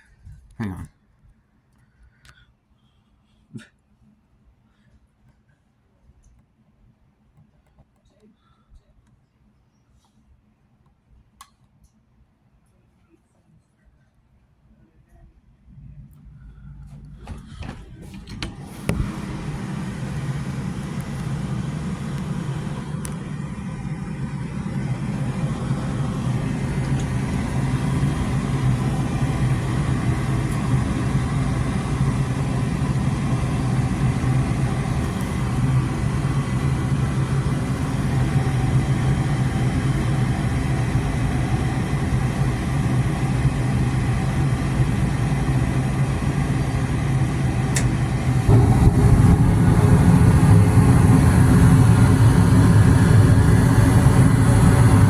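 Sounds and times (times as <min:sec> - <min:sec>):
furnace motor humming: 0:15.8 - 0:55.0.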